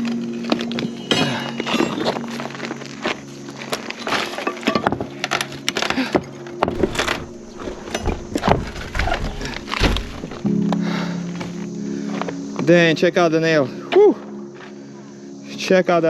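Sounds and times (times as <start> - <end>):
timber being pried and hammered: 4.1 - 10.5.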